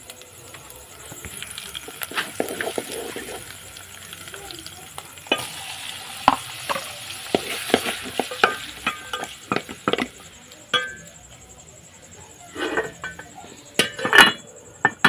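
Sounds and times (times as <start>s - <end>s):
sizzling hiss: 0.0s - 14.3s
spoon clinking on metal pot: 6.3s - 10.1s, 10.7s - 11.1s.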